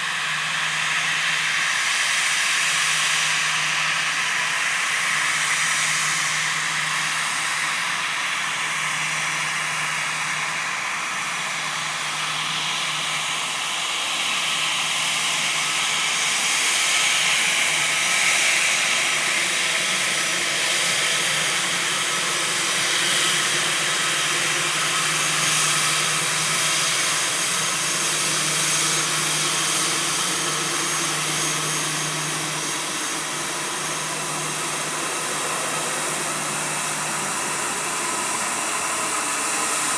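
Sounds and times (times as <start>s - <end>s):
jet engines running: 0.0s - 39.9s.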